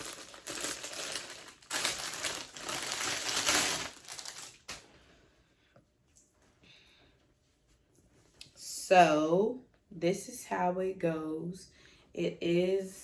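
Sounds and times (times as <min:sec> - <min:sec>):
plastic packaging crinkling: 0:00.0 - 0:04.8.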